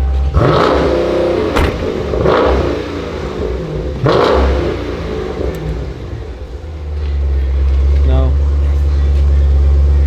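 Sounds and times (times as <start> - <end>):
car engine revving: 0.1 - 6.8.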